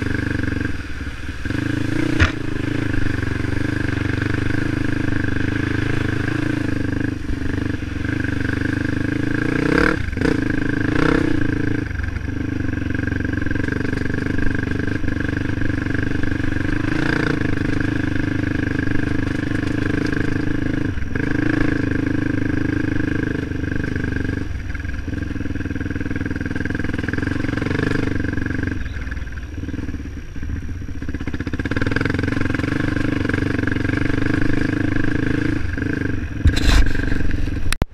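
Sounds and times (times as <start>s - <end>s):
motorcycle engine running: 0.0s - 37.9s.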